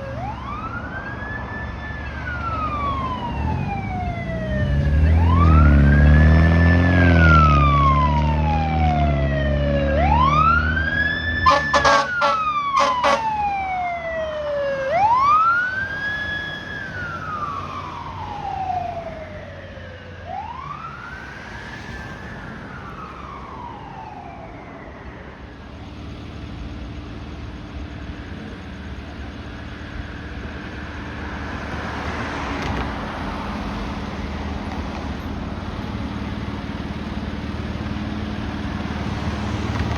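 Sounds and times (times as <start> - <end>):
fire truck siren wailing: 0.0 - 39.9
vehicle noise: 0.0 - 39.9
air horn blasts: 11.4 - 13.4.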